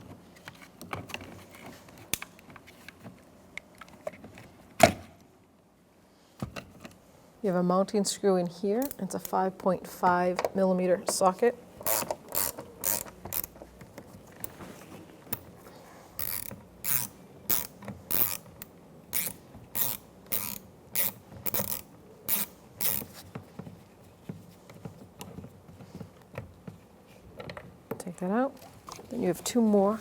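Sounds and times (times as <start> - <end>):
hand ratchet clicking: 11.8 - 13.5, 16.2 - 23.1.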